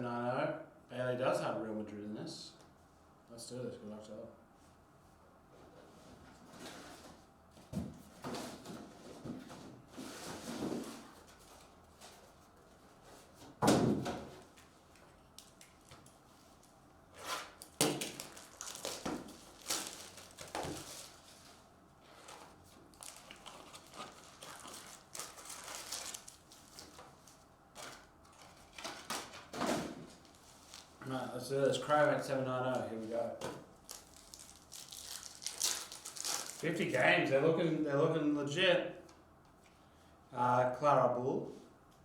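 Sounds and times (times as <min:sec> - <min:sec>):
cardboard and wrapper rustling: 0:17.2 - 0:31.0, 0:33.8 - 0:37.0.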